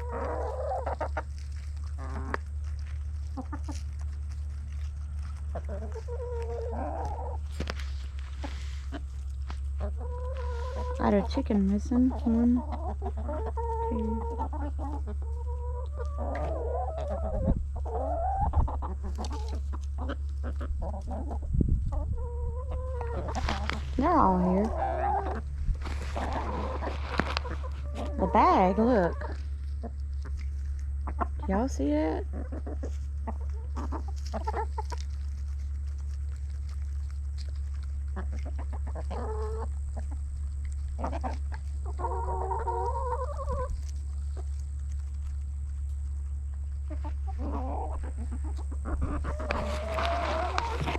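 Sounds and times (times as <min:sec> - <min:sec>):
hen drawn-out calls: 0:00.0 - 0:01.3, 0:09.8 - 0:30.0, 0:41.0 - 0:43.8, 0:46.8 - 0:50.9
hens clucking: 0:00.0 - 0:50.9
low hum: 0:00.0 - 0:50.9.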